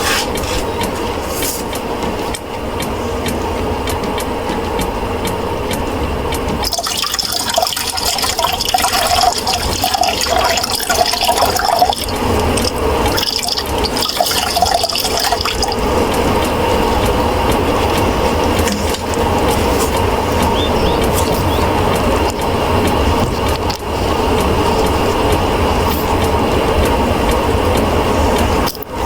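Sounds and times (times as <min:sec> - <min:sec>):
steady low hum: 0:00.0 - 0:29.0
liquid pouring and splashing: 0:06.6 - 0:16.0, 0:18.3 - 0:20.4.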